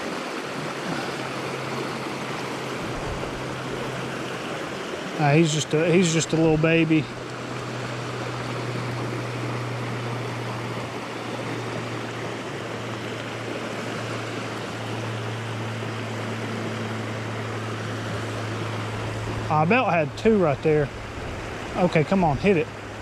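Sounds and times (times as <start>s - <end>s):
constant low hum: 0.0s - 23.0s
creek water rushing over rocks: 0.0s - 23.0s.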